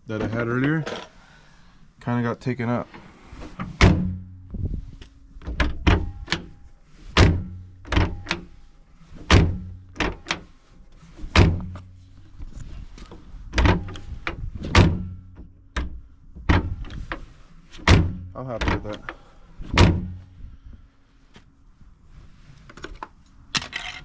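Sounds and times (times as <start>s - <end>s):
door handle and latch clicking: 5.4s - 6.5s, 7.9s - 8.5s.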